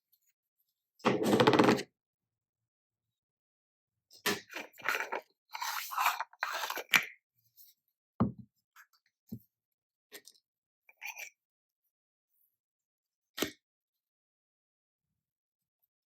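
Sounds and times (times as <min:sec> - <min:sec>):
packaging scraping and rustling: 0:04.6 - 0:07.0.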